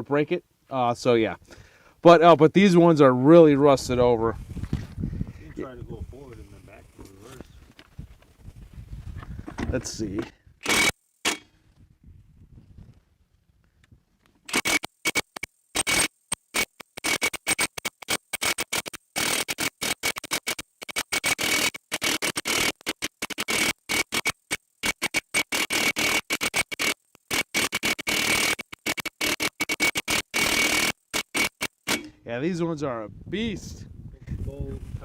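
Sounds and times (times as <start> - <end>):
impact wrench hammering: 10.6 - 11.5, 14.5 - 32.2.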